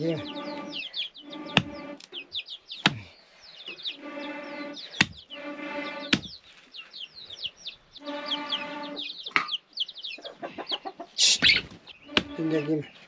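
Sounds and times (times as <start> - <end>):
chickens clucking: 0.0 - 13.0
small birds chirping: 0.0 - 13.0
sharp knocks: 0.2 - 2.0, 4.0 - 6.4, 12.1 - 12.6.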